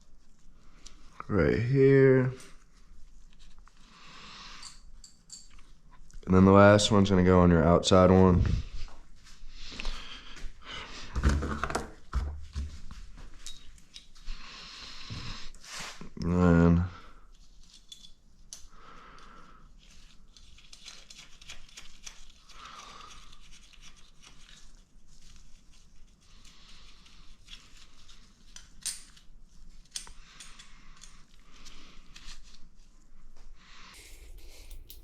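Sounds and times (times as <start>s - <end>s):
hands handling small engine parts: 17.6s - 18.7s.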